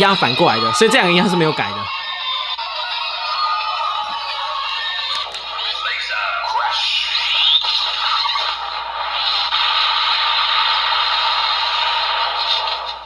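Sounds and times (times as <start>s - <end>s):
electronic toy sound effect: 0.0s - 1.9s.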